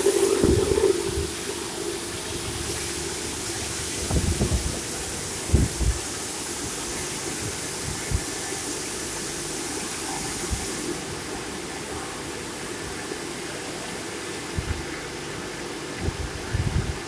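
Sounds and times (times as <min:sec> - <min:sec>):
machine hiss and hum: 0:00.0 - 0:17.0.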